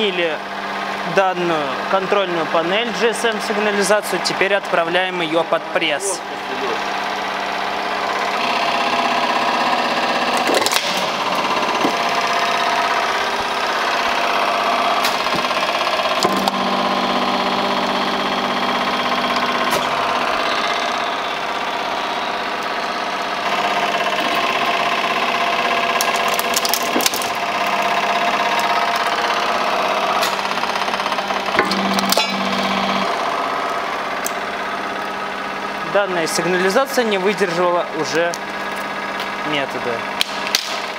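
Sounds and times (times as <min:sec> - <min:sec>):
press mechanical drone: 0:06.0 - 0:34.8
plastic cracking and snapping: 0:10.3 - 0:11.0, 0:26.0 - 0:27.4, 0:40.2 - 0:40.8.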